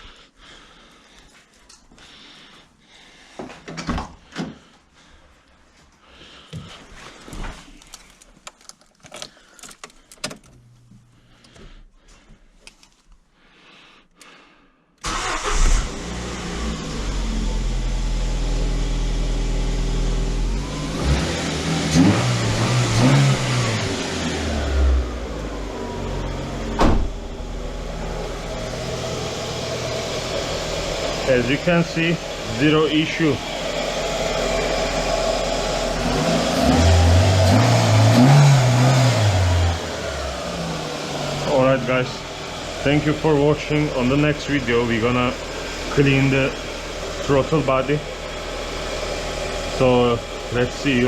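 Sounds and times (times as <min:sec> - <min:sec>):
car engine starting and idling: 0:15.0 - 0:51.0.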